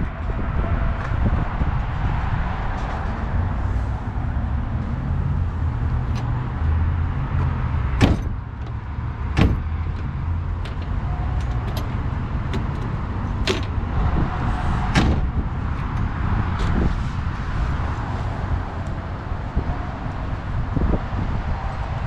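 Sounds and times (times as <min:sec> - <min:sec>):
car engine rumble: 0:00.0 - 0:22.0
sharp knocks: 0:08.0 - 0:08.4, 0:09.4 - 0:10.9.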